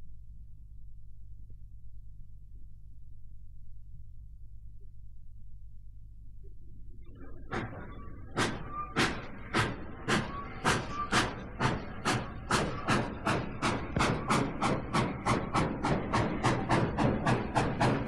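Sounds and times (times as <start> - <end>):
steam locomotive chuffing: 7.1 - 18.0.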